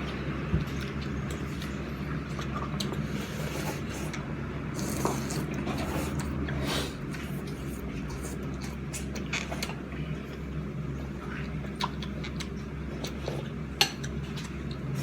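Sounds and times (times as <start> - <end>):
wet slurping: 1.4 - 9.8.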